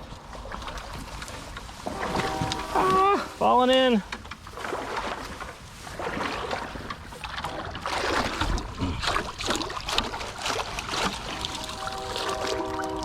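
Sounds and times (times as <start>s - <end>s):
water splashing and sloshing: 0.0s - 13.0s.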